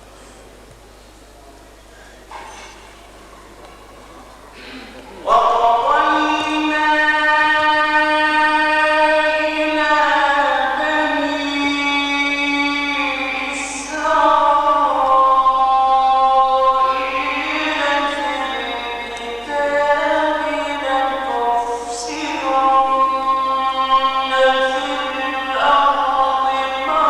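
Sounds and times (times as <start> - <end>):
man chanting melodically: 5.2 - 27.0.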